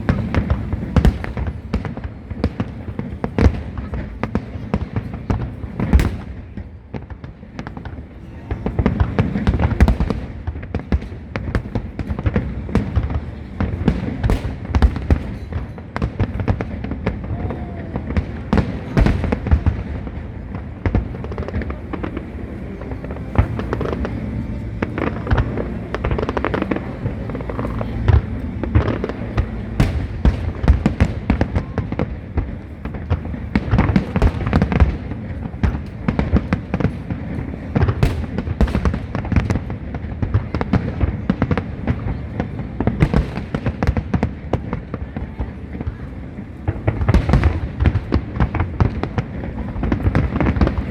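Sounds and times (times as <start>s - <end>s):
fireworks bangs and crackles: 0.0s - 50.9s
low rumble: 8.4s - 36.2s.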